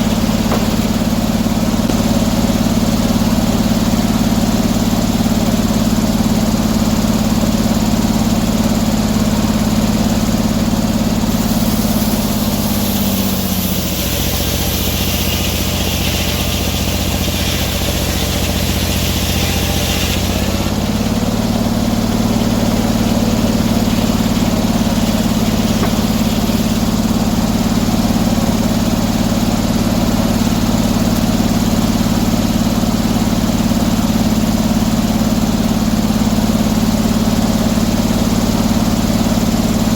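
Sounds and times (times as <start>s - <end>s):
saw hissing in wood: 0.0s - 2.7s, 11.3s - 29.3s
sawmill engine running: 0.0s - 39.9s.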